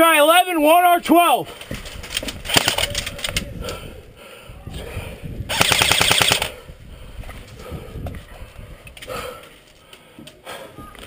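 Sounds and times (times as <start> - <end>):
airsoft rifle firing: 5.5 - 6.5.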